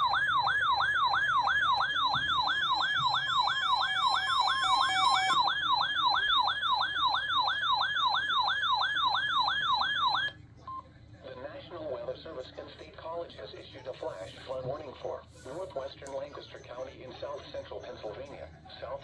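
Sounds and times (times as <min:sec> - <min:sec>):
electronic warbling alert tone: 0:02.3 - 0:05.4.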